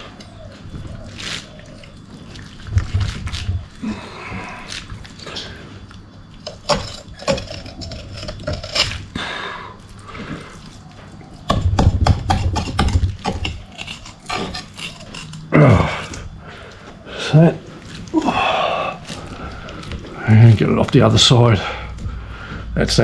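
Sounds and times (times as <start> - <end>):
knife scraping fish fillet: 6.4 - 9.1, 11.4 - 15.5.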